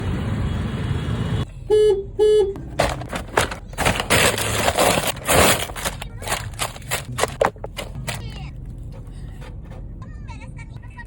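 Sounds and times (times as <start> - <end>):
street traffic: 0.0 - 11.0
vehicle horn toots: 0.8 - 2.8.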